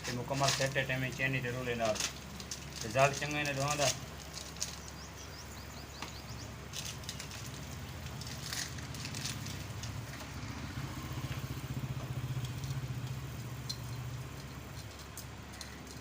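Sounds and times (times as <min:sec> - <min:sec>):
motorcycle engine idling: 0:04.7 - 0:16.0.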